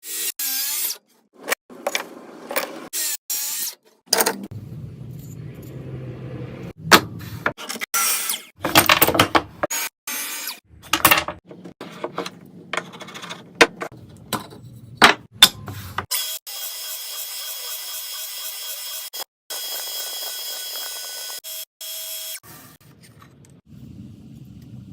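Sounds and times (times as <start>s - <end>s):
power tools cutting wood: 0.0s - 3.8s, 16.0s - 22.7s.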